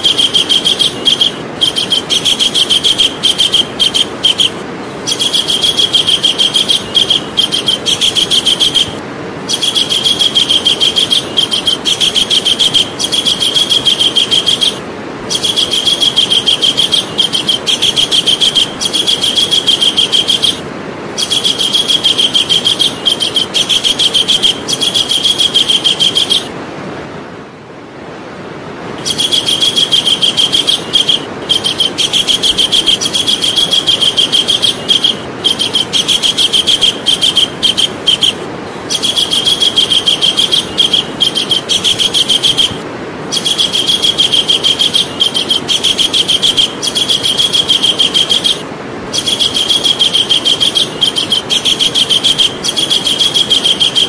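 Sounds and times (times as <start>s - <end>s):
kingfisher calling: 0.0s - 26.5s, 29.0s - 54.0s.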